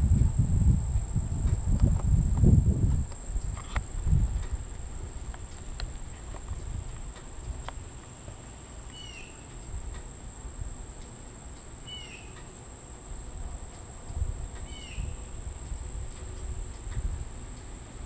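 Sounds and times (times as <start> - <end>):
wind rumble on microphone: 0.0 - 7.9, 13.0 - 18.0
insect high-pitched drone: 0.0 - 18.0
bird chirping: 11.8 - 12.4.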